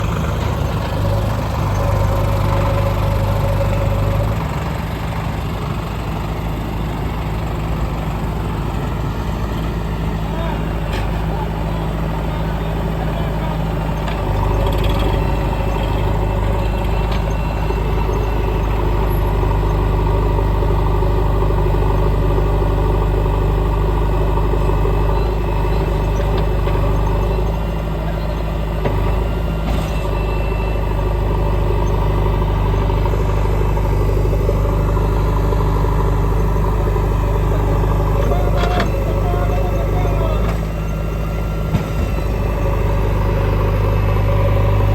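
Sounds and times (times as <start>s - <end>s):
diesel engine running: 0.0s - 44.9s
faint clunk: 41.7s - 42.2s.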